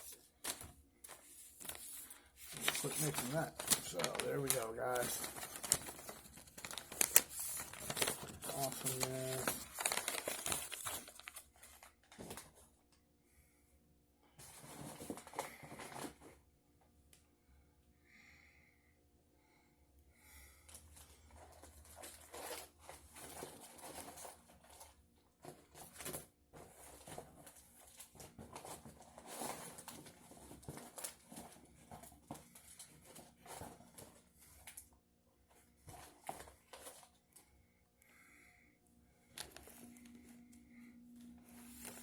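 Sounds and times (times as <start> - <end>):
paper and packaging rustling: 0.0 - 12.7, 14.4 - 16.3, 21.2 - 34.9, 35.6 - 37.4, 39.3 - 42.0.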